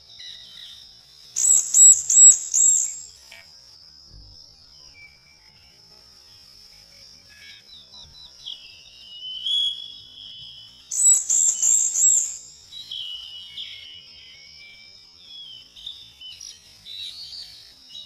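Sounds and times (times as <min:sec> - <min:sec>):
birds chirping and trilling: 0:01.4 - 0:03.1, 0:10.9 - 0:13.2
high-pitched drone: 0:01.4 - 0:03.1, 0:11.0 - 0:12.5
rapid very high chirps: 0:01.4 - 0:03.1, 0:10.9 - 0:12.6.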